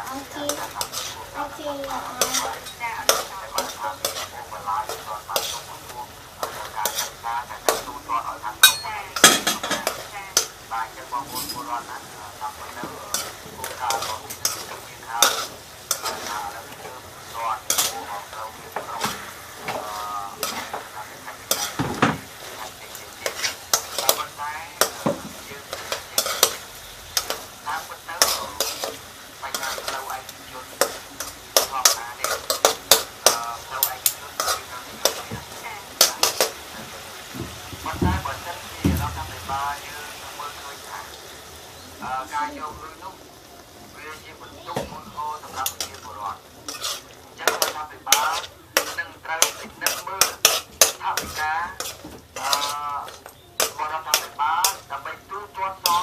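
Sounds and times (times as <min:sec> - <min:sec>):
food sizzling in a pan: 0:00.0 - 0:56.0
metal spatula scraping a pan: 0:00.1 - 0:37.3, 0:45.3 - 0:56.0
utensil scraping and knocking pan: 0:00.5 - 0:01.2, 0:02.2 - 0:05.6, 0:46.7 - 0:54.8.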